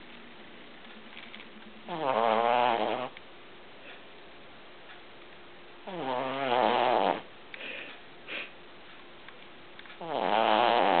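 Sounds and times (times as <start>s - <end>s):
puppy snoring: 1.8s - 3.2s, 5.8s - 8.5s, 10.0s - 11.0s
soft breath: 7.5s - 8.6s.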